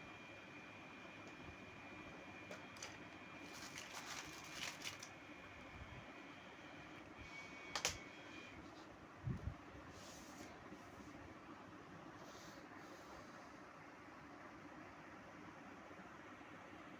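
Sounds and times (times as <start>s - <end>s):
crinkly rustling: 2.6s - 5.2s.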